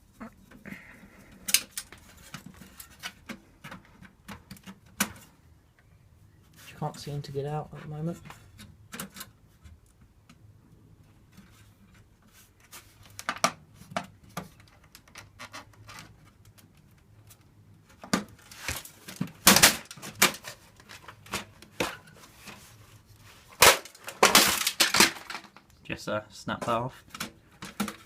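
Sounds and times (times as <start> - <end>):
metal computer parts clattering: 18.8 - 22.1, 23.6 - 25.6.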